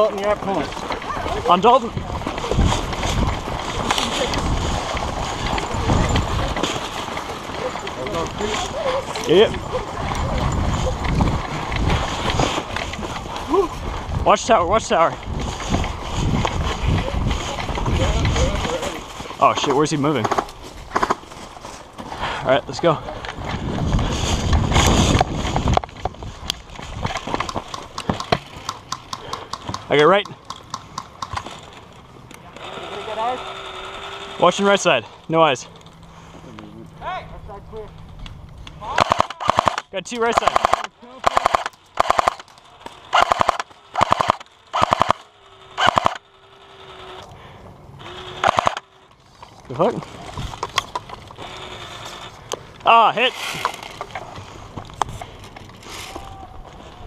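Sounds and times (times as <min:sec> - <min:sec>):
gear rustling on microphone: 0:00.0 - 0:22.2, 0:23.0 - 0:29.0
airsoft guns firing bursts: 0:38.9 - 0:42.4, 0:43.1 - 0:46.2, 0:48.3 - 0:48.9.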